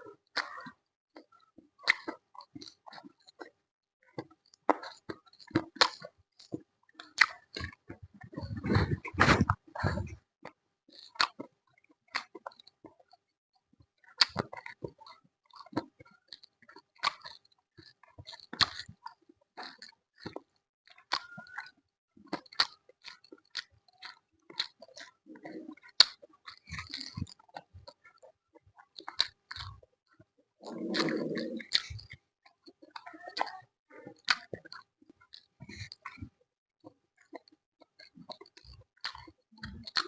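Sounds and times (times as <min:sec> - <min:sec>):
person chewing crunchy food: 0:00.0 - 0:40.0.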